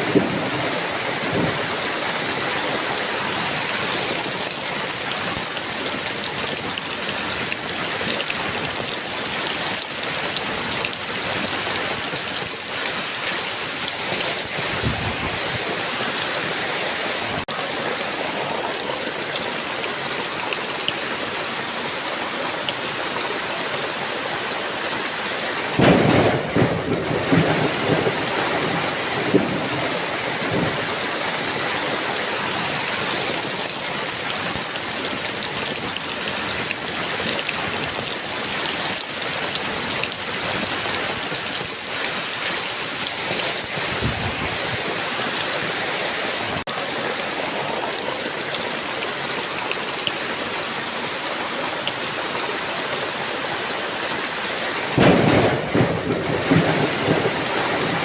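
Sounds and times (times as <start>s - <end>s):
thunderclap and rumble: 0.0s - 1.7s, 14.0s - 15.7s, 25.8s - 31.0s, 43.7s - 44.8s, 55.0s - 58.0s
heavy rain pouring: 0.0s - 58.0s.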